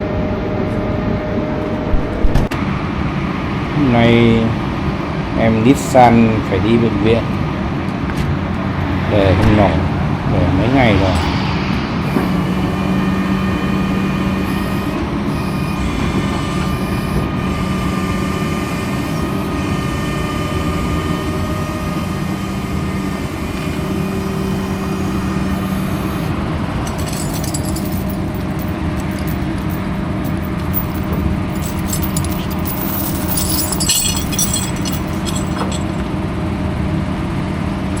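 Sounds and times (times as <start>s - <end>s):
vehicle engine idling: 12.0s - 36.6s.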